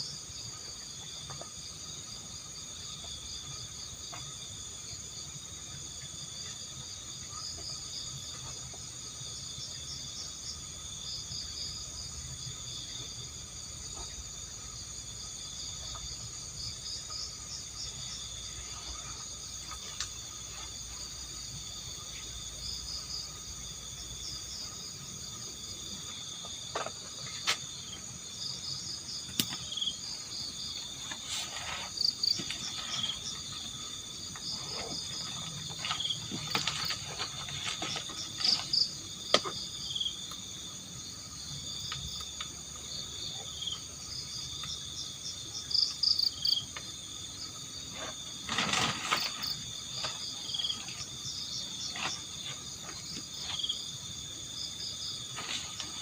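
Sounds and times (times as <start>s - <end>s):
crickets and night insects: 0.0s - 56.0s
sharp knocks and rustles: 26.0s - 28.1s, 30.8s - 39.7s, 47.9s - 53.9s, 55.1s - 56.0s.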